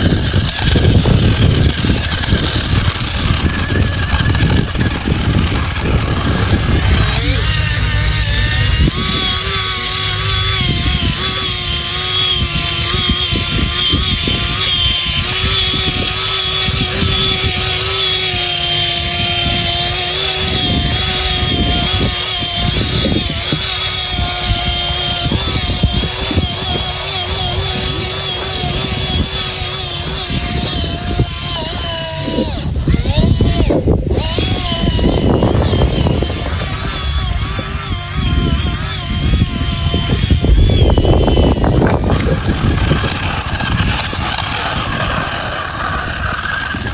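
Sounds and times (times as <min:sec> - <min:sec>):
electric motor whine: 0:00.0 - 0:46.9
rough low rumble: 0:00.7 - 0:12.0.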